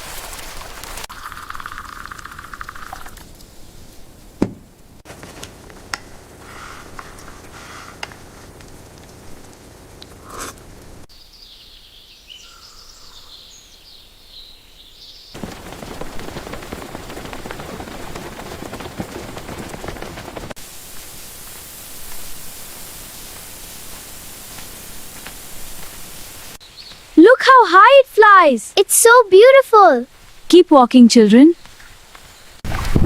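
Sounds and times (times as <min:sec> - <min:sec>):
rain rushing: 0:00.0 - 0:05.0, 0:05.6 - 0:11.1, 0:15.4 - 0:28.5
birds chirping: 0:11.1 - 0:20.6, 0:26.4 - 0:27.2.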